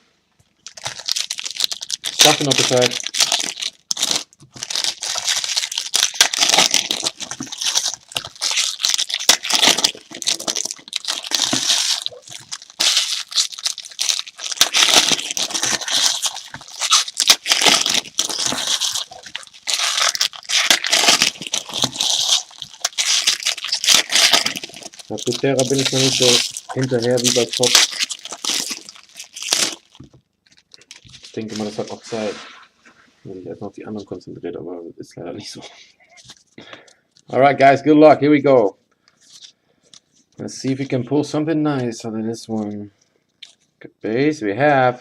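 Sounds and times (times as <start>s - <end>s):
wrapping crinkling and tearing: 0.6s - 32.4s, 39.2s - 41.0s.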